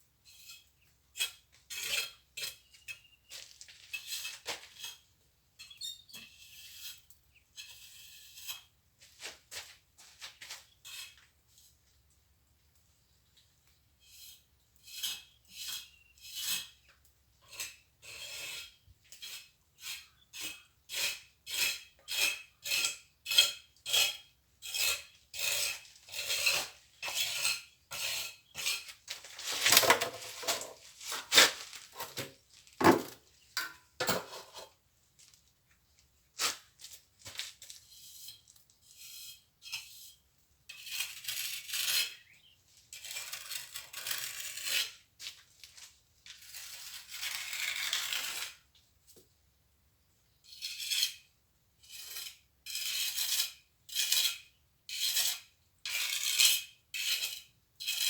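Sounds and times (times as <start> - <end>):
trowel scraping mortar: 0.3 - 9.4, 14.0 - 16.8, 17.4 - 34.8, 36.4 - 45.1, 45.8 - 48.7.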